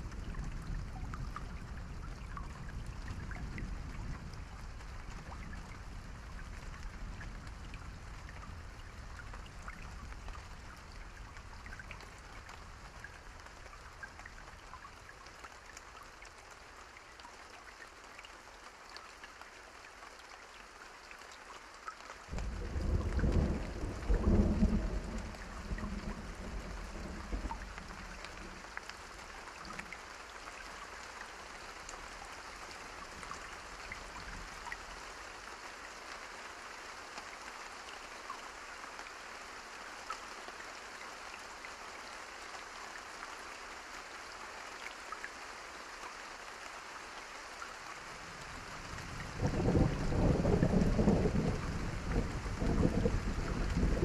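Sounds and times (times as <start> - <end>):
individual raindrops: 0.0 - 54.0
steady rain: 0.0 - 54.0
thunder rumble: 22.3 - 28.6, 49.0 - 54.0.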